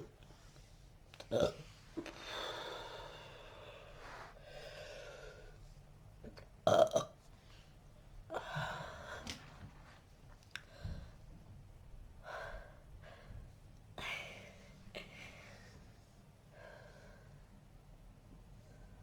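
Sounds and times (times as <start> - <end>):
person burping: 1.3 - 1.6, 6.7 - 7.2.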